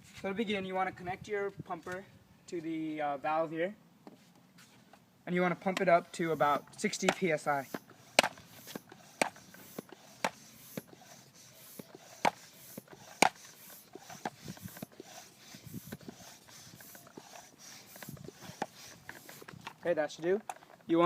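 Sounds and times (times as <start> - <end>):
hand air pump pumping: 5.6 - 21.0.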